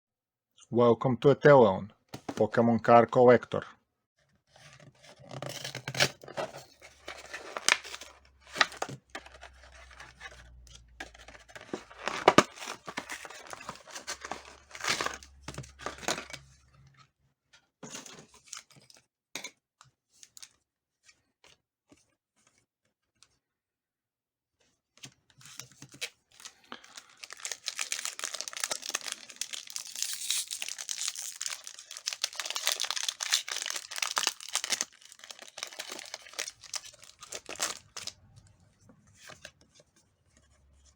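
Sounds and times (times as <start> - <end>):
packaging tearing and crackling: 5.3 - 10.4, 11.1 - 16.4, 26.4 - 38.2
foil wrapper crinkling: 6.9 - 10.3, 11.2 - 16.4, 26.4 - 38.1.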